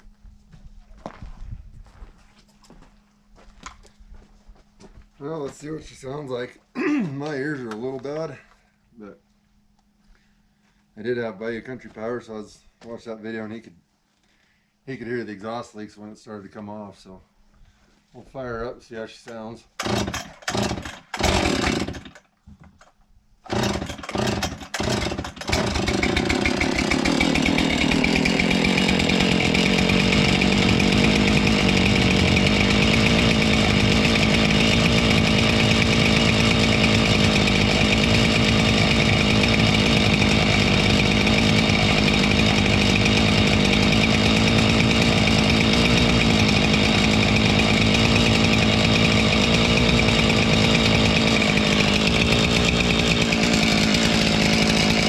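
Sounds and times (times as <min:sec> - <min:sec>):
chainsaw starting and running: 0:19.3 - 0:55.0.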